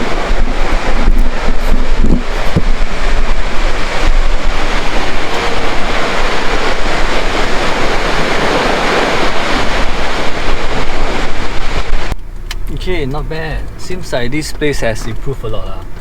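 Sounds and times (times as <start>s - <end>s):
waterfall roaring: 0.0s - 12.2s
wind buffeting microphone: 0.0s - 12.2s.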